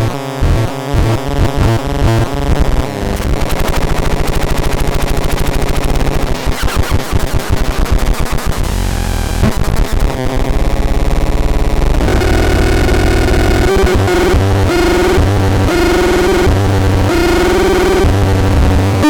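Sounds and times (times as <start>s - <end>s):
harsh pulsing synthesizer tone: 0.0s - 19.0s
steady synthesizer tones: 7.5s - 19.0s.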